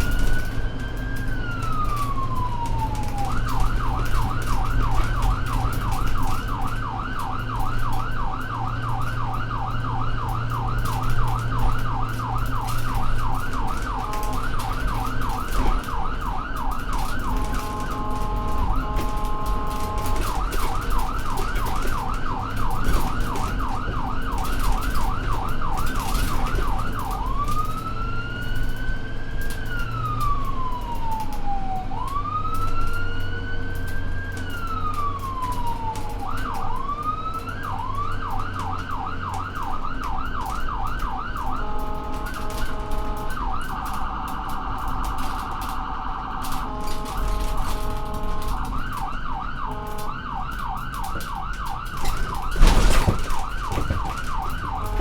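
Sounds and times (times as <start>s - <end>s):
emergency vehicle siren: 0.0s - 55.0s
low engine rumble: 41.3s - 55.0s.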